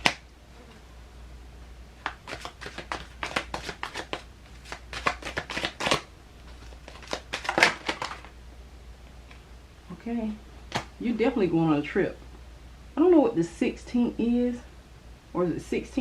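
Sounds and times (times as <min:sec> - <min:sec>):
cards being shuffled: 0:02.0 - 0:08.4.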